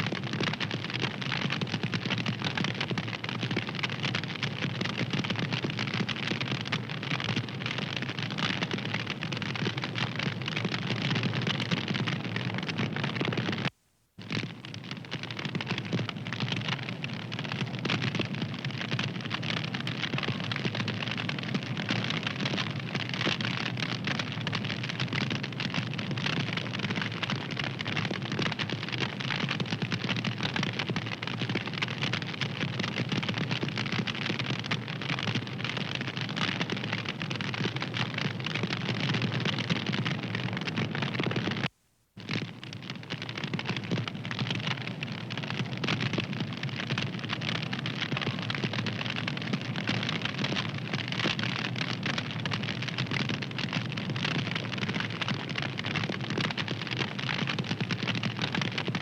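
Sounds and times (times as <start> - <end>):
fire crackling: 0.0 - 58.8.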